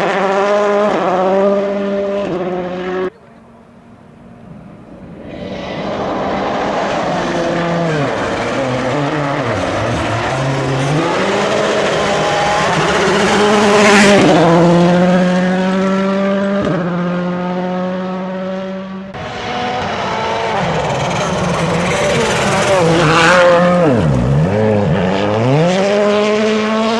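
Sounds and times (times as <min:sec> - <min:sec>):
rally car engine revving: 0:00.0 - 0:26.9.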